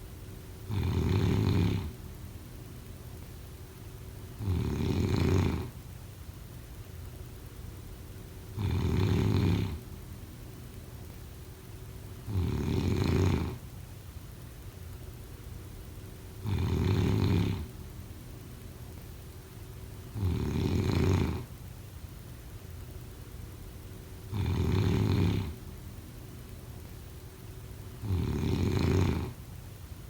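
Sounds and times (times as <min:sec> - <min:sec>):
deep snoring: 0:00.7 - 0:02.0, 0:04.4 - 0:05.8, 0:08.6 - 0:09.8, 0:12.3 - 0:13.6, 0:16.4 - 0:17.7, 0:20.2 - 0:21.5, 0:24.3 - 0:25.6, 0:28.0 - 0:29.4.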